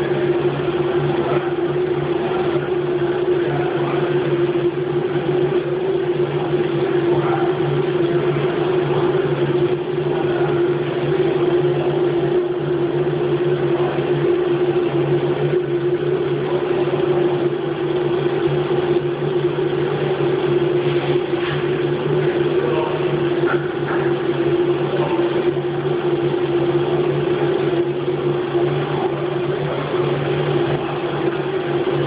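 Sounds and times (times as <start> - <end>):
milling machine humming: 0.0 - 32.0.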